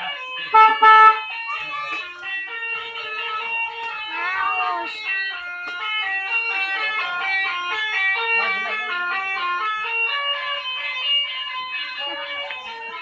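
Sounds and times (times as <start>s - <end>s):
multi-trumpet horn melody: 0.5s - 1.3s.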